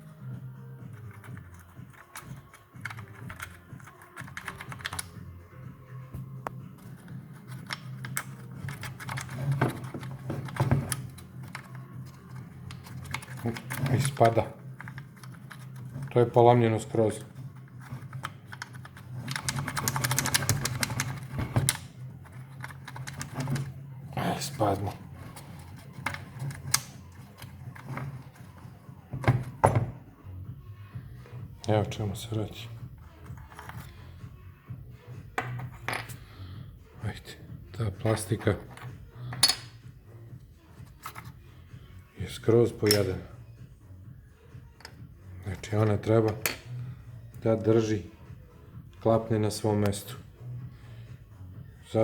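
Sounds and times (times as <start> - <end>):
hands handling plastic parts: 6.4 - 23.8, 24.4 - 30.0
plastic pieces clicking and knocking: 18.0 - 23.7.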